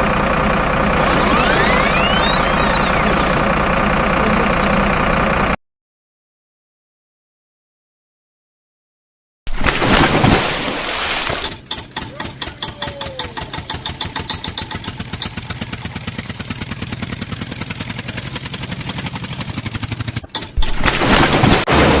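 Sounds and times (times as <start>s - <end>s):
engine chugging: 0.0s - 5.6s, 11.6s - 20.6s
loud engine burst: 0.9s - 4.6s, 20.8s - 22.0s.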